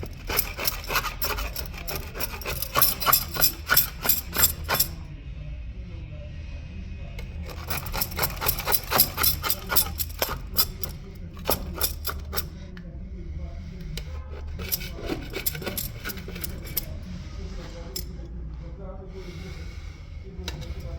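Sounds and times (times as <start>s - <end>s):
scraping strokes on marble: 0.0s - 5.0s, 7.5s - 12.6s, 14.0s - 18.1s.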